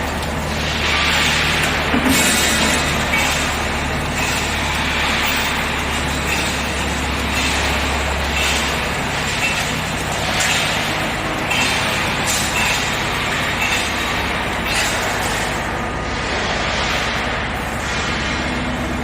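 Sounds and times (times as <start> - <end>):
welding machine running: 0.0 - 19.0.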